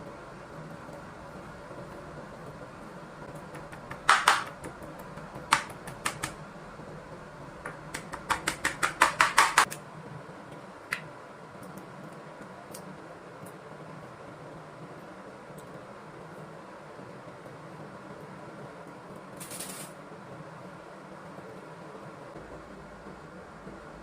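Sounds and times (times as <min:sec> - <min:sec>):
low background hum: 0:00.0 - 0:24.0
hard object knocking on hard surface: 0:07.7 - 0:09.7.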